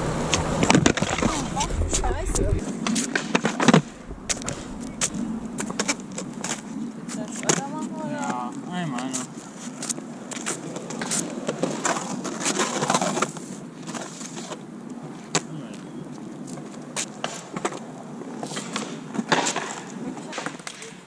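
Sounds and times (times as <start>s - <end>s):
skateboard wheels rolling: 0.0s - 21.0s
skateboard clacking on ground: 2.7s - 15.8s, 16.4s - 21.0s.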